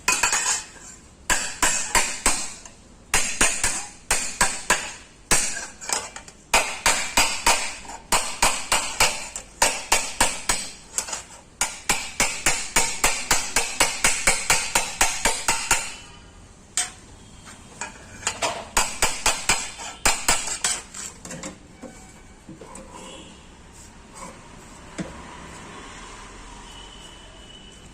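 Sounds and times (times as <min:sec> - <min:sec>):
hammer beating sheet metal: 0:01.3 - 0:16.2, 0:18.2 - 0:20.9.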